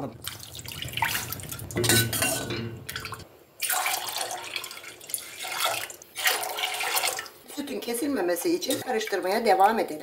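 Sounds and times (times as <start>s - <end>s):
milk pouring into tea: 3.0s - 7.3s.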